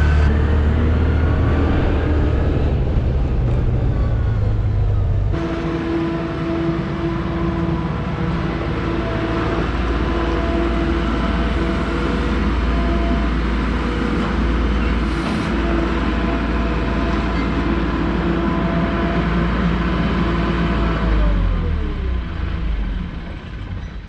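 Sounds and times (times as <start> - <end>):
ride noise: 0.0 - 17.8
utility vehicle engine rumble: 0.0 - 24.0.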